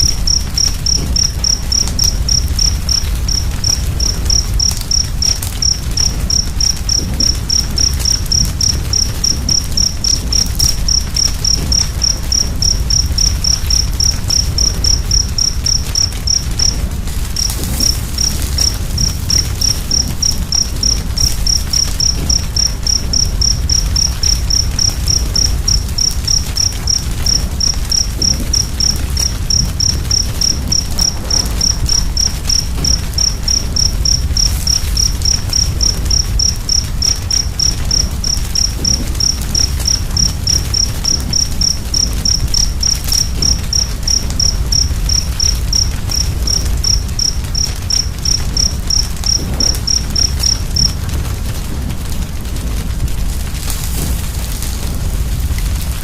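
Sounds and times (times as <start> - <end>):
faint fire crackles: 0.0 - 56.0
wood fire burning: 0.0 - 56.0.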